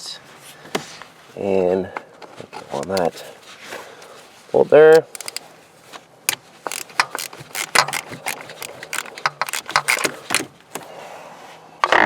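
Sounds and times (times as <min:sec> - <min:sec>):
socket ratchet clicking: 0:04.9 - 0:05.5, 0:06.3 - 0:10.9.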